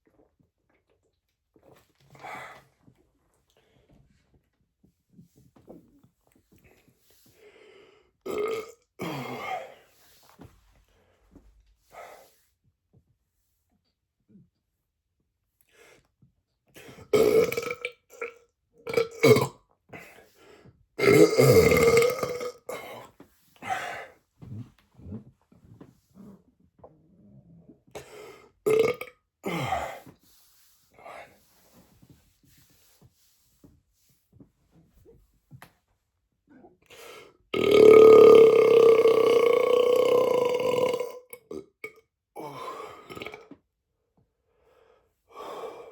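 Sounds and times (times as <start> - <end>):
man belching: 8.3 - 9.6, 17.1 - 19.6, 21.0 - 22.9, 28.7 - 29.8, 37.5 - 43.5.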